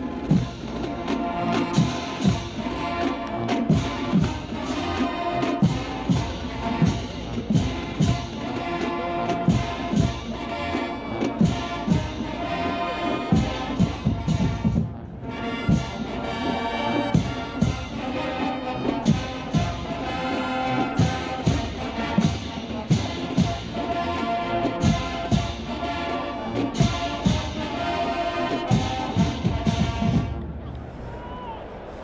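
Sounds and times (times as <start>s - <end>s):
brass holding chords: 0.0s - 30.4s.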